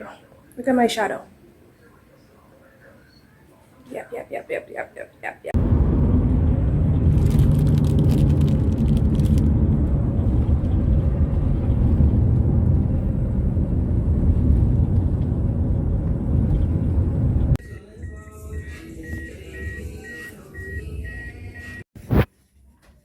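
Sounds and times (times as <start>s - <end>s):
car driving rumble: 5.6s - 17.6s
crackling: 5.6s - 17.6s.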